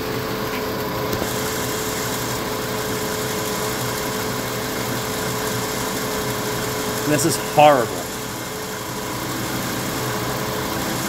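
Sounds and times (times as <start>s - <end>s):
car engine running: 0.3s - 11.0s
steady whine: 6.7s - 8.6s.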